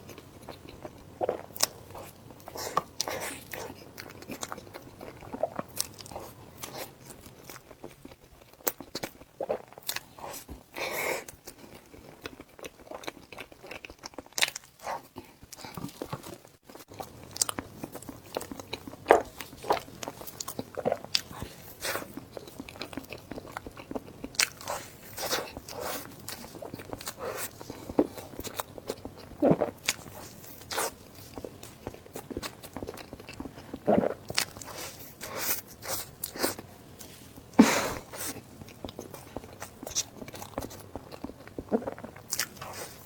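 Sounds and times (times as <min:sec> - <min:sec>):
person chewing food: 0:00.0 - 0:43.0
food crunching: 0:11.4 - 0:43.0.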